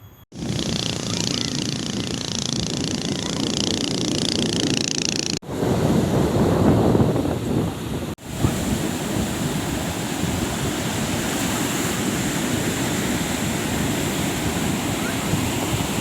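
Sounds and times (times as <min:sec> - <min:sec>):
wind: 0:00.0 - 0:16.0
rushing water: 0:07.2 - 0:16.0.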